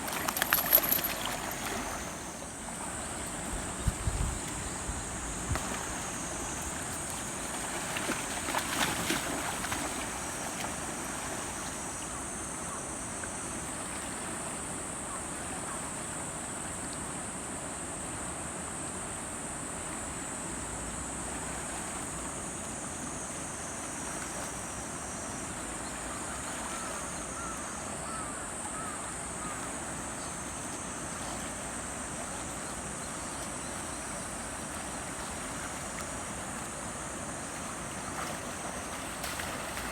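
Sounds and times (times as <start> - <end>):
river water rushing: 0.0 - 3.7, 33.7 - 39.9
wind on microphone: 3.4 - 5.8.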